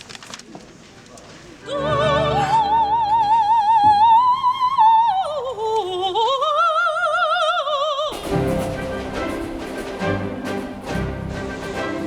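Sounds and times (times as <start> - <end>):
operatic singing with vibrato: 1.6 - 12.0
faint accompaniment: 8.1 - 12.0.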